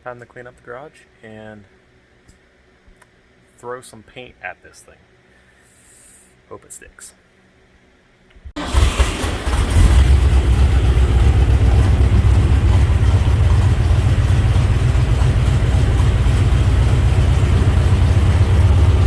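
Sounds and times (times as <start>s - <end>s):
pickup truck engine running: 8.6s - 19.0s.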